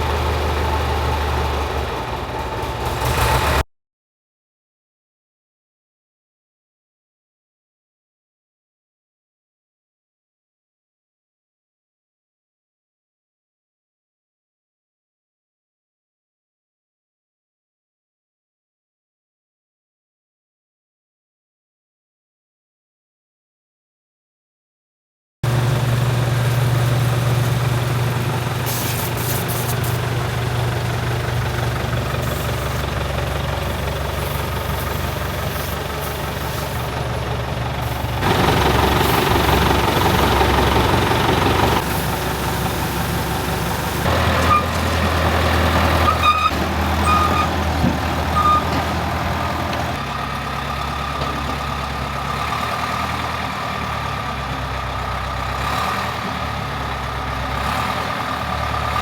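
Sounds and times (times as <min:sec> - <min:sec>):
diesel engine idling: 0:00.0 - 0:03.6, 0:25.4 - 0:59.0.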